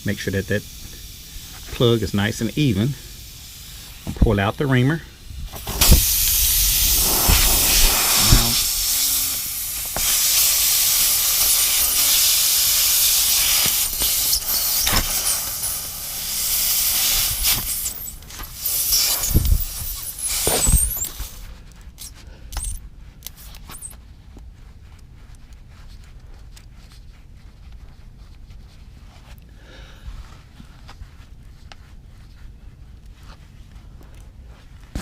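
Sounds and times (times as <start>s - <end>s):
air hissing from tire: 0.0s - 24.0s
handling noise: 3.8s - 29.4s.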